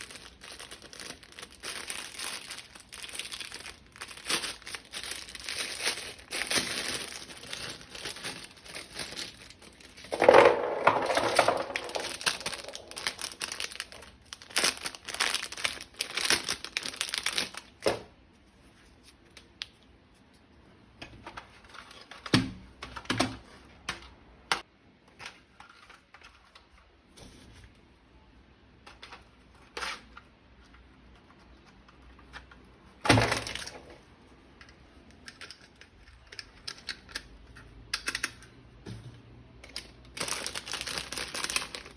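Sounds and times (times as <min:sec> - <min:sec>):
plastic packaging crinkling and tearing: 0:00.0 - 0:17.9, 0:39.7 - 0:41.9.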